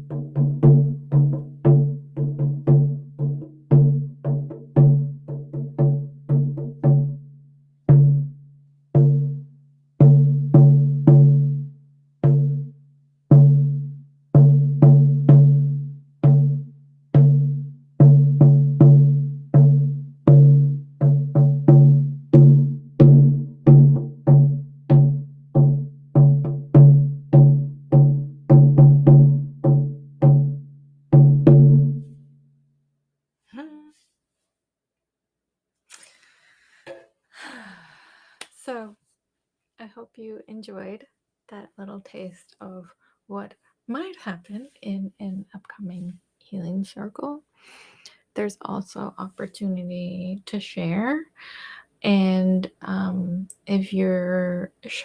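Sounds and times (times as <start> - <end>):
hand drum struck by hand: 0.0 - 8.4, 9.0 - 9.4, 10.0 - 12.7, 13.3 - 32.1.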